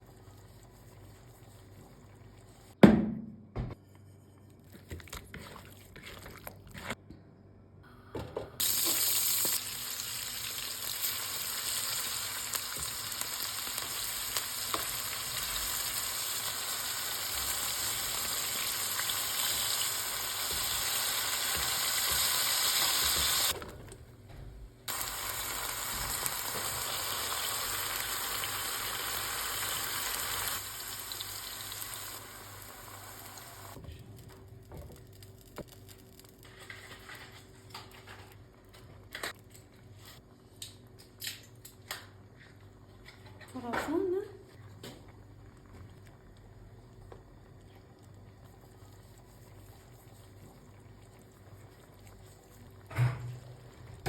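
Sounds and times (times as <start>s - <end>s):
food sizzling in a skillet: 8.6s - 23.6s, 24.9s - 33.8s.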